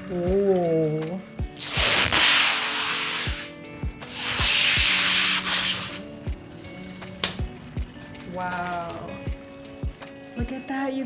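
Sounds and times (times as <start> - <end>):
loud bursts of rushing hiss: 1.6 - 6.0.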